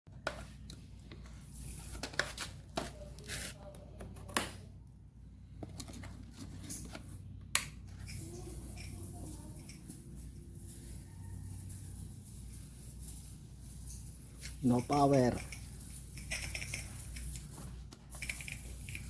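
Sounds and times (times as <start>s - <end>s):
objects clicking and knocking: 13.8s - 19.0s.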